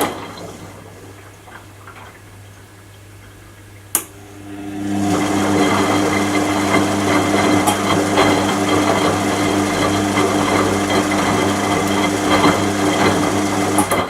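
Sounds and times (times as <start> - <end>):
washing machine hum: 0.0 - 14.0
washing machine motor running: 0.0 - 14.0
washing machine click: 3.9 - 14.0.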